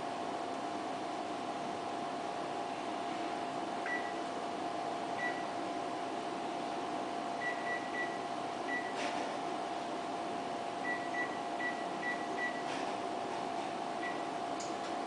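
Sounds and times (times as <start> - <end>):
ultrasound scanner humming: 0.0 - 15.0.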